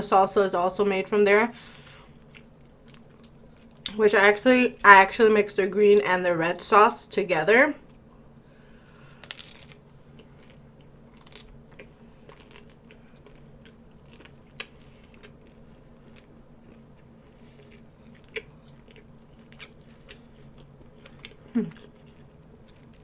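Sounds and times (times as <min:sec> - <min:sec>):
low steady hum: 0:00.0 - 0:23.0
person chewing food: 0:01.7 - 0:03.9, 0:08.8 - 0:23.0.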